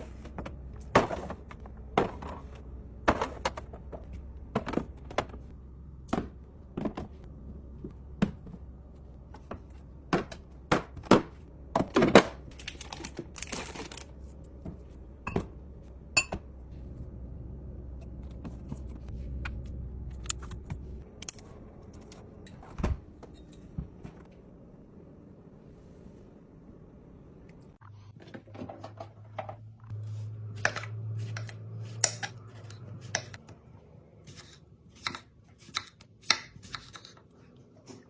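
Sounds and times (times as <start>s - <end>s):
steady low hum: 0.0s - 28.2s.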